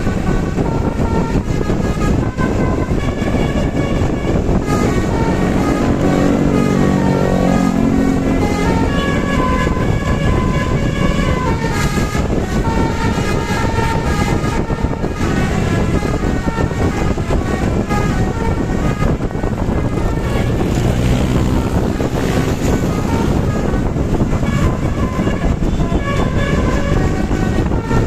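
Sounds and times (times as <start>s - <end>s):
bus horn playing a tune: 0.0s - 28.0s
lower horn chord: 3.0s - 19.0s.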